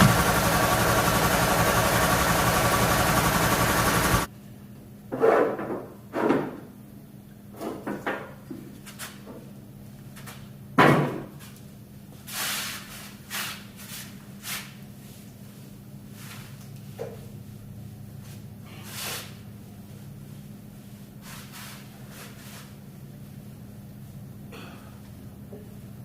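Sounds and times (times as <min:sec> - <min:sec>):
motor-driven machine running: 0:00.0 - 0:04.3.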